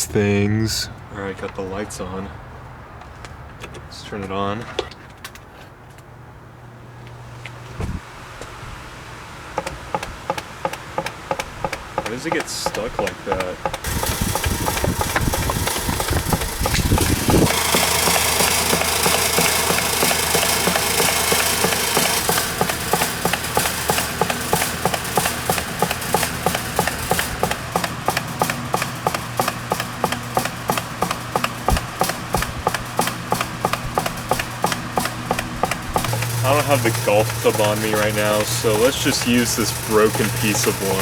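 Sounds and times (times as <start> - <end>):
electric fan motor humming: 7.6 - 41.0
rapid even clicking: 9.6 - 41.0.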